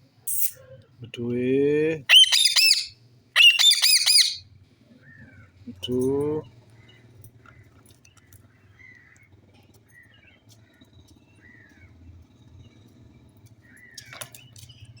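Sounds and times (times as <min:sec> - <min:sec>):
short bird chirps: 0:00.3 - 0:00.6, 0:02.1 - 0:04.4
loud bird call: 0:02.0 - 0:04.4.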